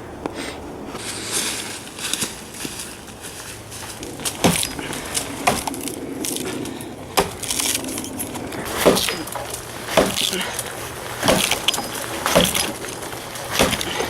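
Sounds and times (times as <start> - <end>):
sticks cracking and knocking: 3.6 - 14.0
sharp cracks: 3.9 - 14.0.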